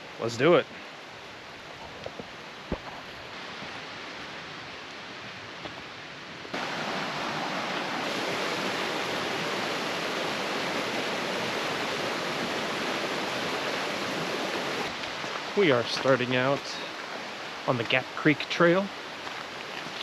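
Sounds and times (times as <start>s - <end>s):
creek water rushing: 0.0s - 20.0s.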